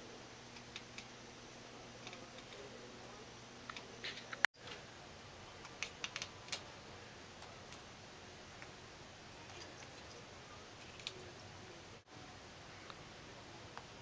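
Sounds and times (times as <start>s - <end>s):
kitten clicking: 5.6s - 6.6s.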